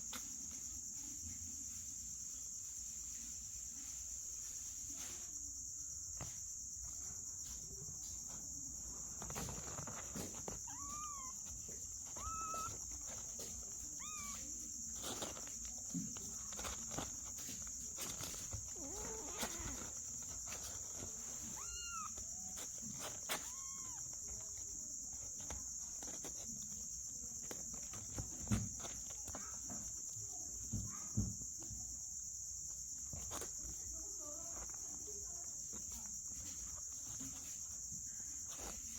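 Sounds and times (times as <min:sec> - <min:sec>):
insects chirring: 0:00.0 - 0:38.9
light knocks and bumps: 0:06.1 - 0:32.0
kittens mewing: 0:10.4 - 0:15.4, 0:18.5 - 0:20.4, 0:21.4 - 0:24.6.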